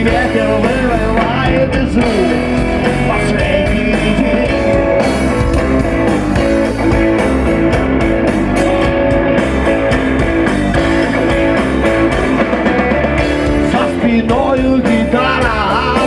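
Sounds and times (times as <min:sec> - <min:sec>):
live rock band playing: 0:00.0 - 0:16.0.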